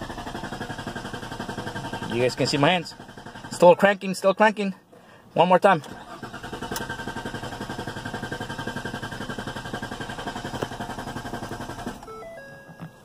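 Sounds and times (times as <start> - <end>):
car starter cranking: 0.0 - 3.8, 5.8 - 13.0
short electronic tones: 12.0 - 13.0.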